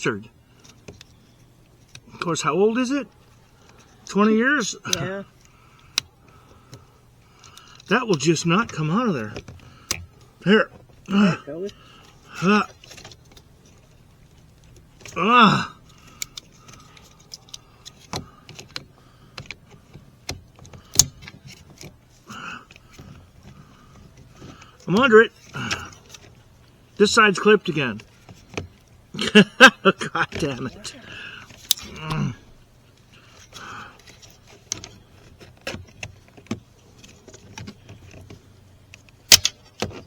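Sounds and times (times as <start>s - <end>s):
screwdriver prying plastic clips: 39.3s - 40.0s.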